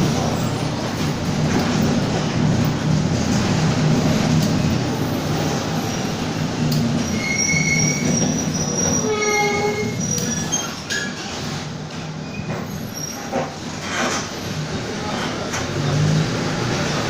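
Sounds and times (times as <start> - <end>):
bus engine low drone: 0.0 - 7.1, 13.8 - 17.0.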